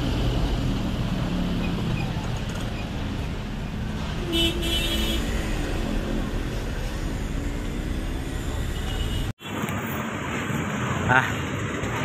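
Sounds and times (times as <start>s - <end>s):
traffic rumble: 0.0s - 12.0s.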